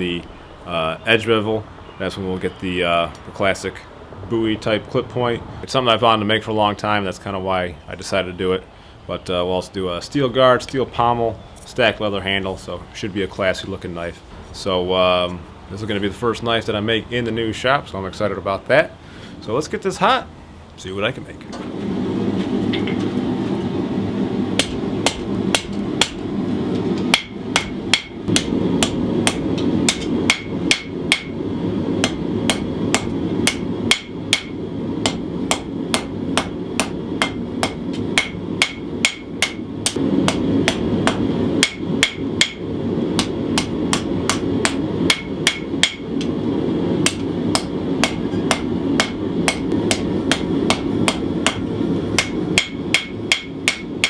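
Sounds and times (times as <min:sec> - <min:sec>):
low rumble: 0:21.7 - 0:53.0
hammer on anvil ringing: 0:27.1 - 0:31.4, 0:32.0 - 0:39.7, 0:40.3 - 0:42.6, 0:43.2 - 0:46.1, 0:47.0 - 0:51.6, 0:52.2 - 0:54.0.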